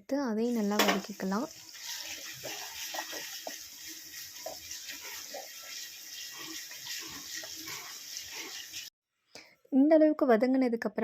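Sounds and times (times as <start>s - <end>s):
vegetables sizzling in oil: 0.4s - 8.9s.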